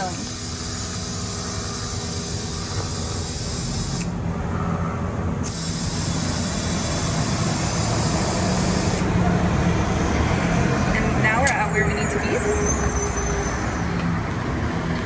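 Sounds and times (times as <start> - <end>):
compressed air hissing into tire: 0.0 - 4.2, 5.4 - 9.2.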